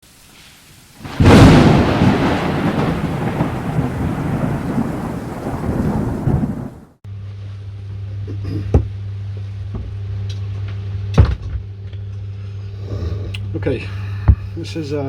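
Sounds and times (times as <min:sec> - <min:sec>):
thunderclap with rumbling: 0:01.0 - 0:07.0.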